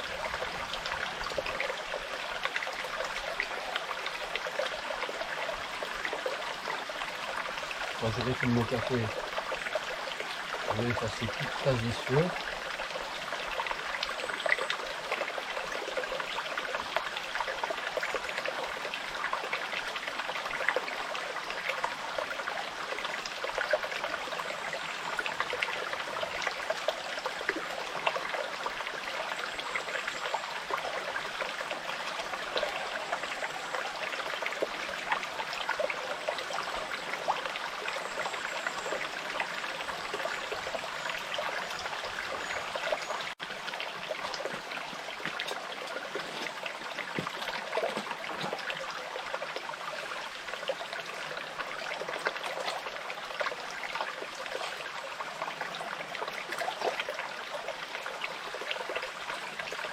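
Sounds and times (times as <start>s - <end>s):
brook babbling over stones: 0.0s - 59.9s.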